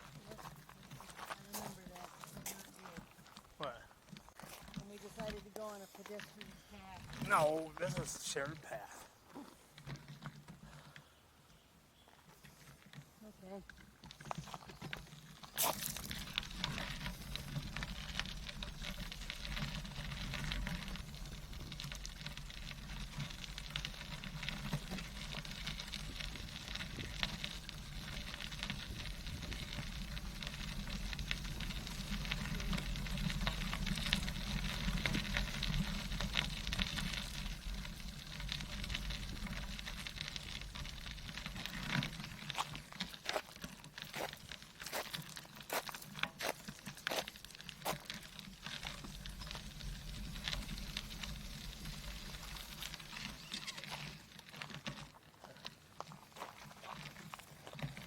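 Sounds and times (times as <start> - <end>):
bicycle tyres rolling on path: 0.0 - 58.0
bicycle clicks and rattles: 13.7 - 55.2.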